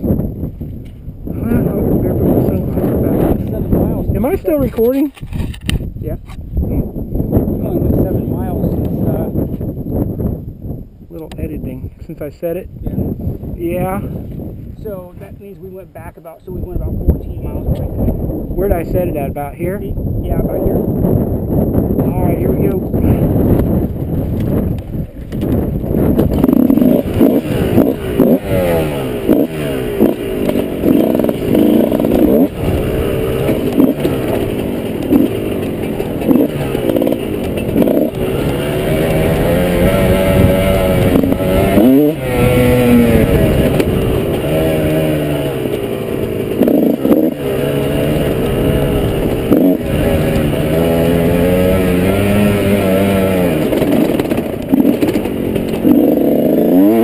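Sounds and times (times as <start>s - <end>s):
dirt bike engine revving: 1.2s - 5.3s, 22.2s - 57.0s.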